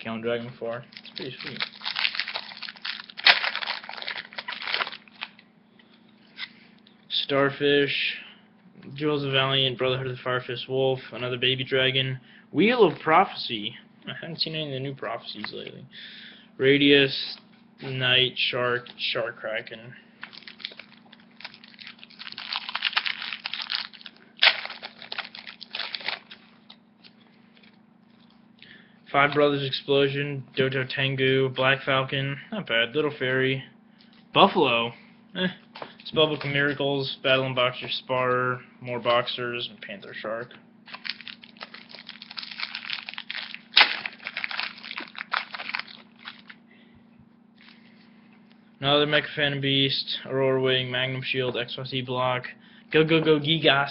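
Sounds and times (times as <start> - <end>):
foil wrapper crinkling: 0.8 - 5.4, 20.2 - 28.3, 40.9 - 46.6
wrapper tearing: 0.8 - 5.4, 20.2 - 26.8, 40.9 - 46.6.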